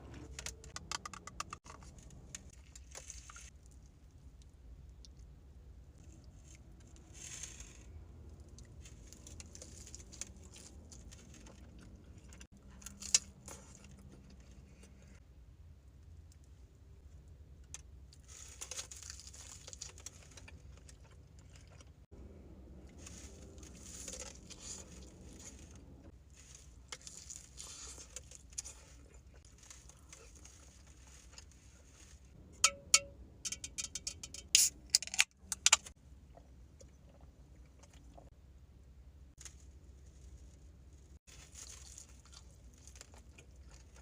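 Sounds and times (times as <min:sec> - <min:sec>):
chewing and wet mouth sounds: 0:08.2 - 0:15.2, 0:18.1 - 0:32.3, 0:36.1 - 0:38.4, 0:41.2 - 0:44.0.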